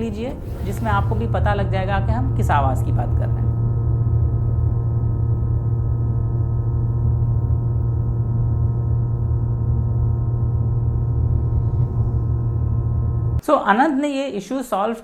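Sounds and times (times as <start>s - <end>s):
electric car cooling pump hum: 0.0s - 13.4s.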